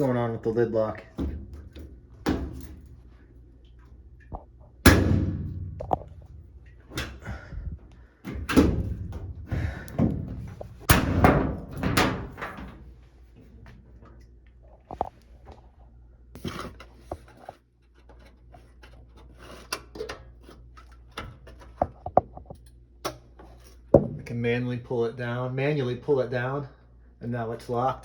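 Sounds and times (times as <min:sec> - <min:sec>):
washing machine lid slamming: 0:04.9 - 0:06.1, 0:08.4 - 0:12.8.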